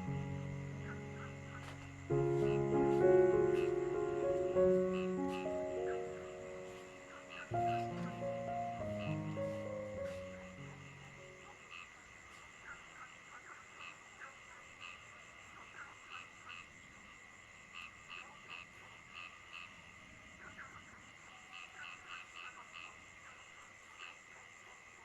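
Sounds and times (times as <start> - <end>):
music: 0.0 - 11.6
frogs calling: 0.0 - 25.0.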